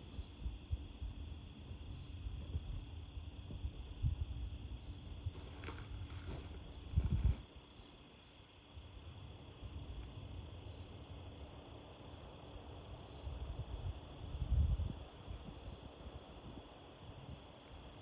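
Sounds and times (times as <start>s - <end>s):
wind buffeting microphone: 0.2s - 7.5s, 13.3s - 17.4s.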